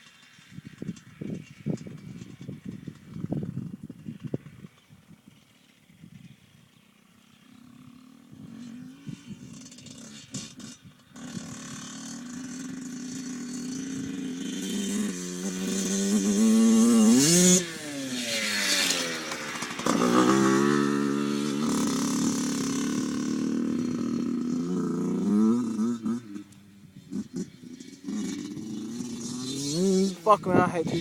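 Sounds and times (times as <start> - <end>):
dirt bike engine revving: 7.0 - 31.0.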